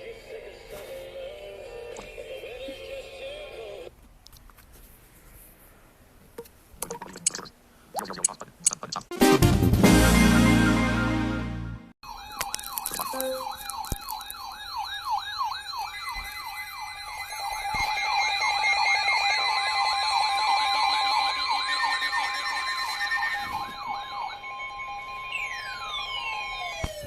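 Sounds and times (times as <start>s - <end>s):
electronic siren yelping: 12.0s - 27.0s
higher siren wavering: 12.1s - 27.0s.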